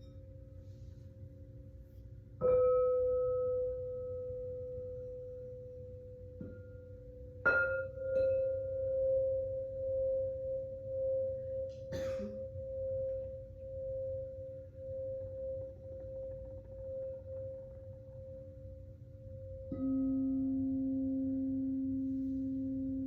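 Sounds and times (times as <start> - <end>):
singing bowl ringing: 2.4 - 23.0
singing bowl struck: 2.4 - 23.0.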